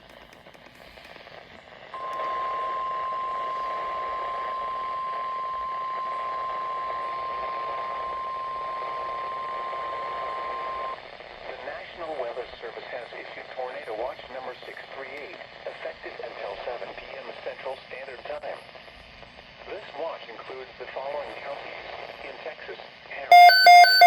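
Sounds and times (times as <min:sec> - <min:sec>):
radio static hiss: 0:00.0 - 0:23.1
steady alarm tone beep: 0:23.3 - 0:24.0.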